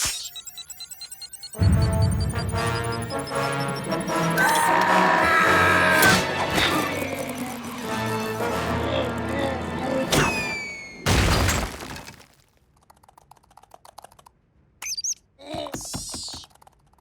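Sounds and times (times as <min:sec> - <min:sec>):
cartoon hit with falling whistle: 0:10.1 - 0:11.6.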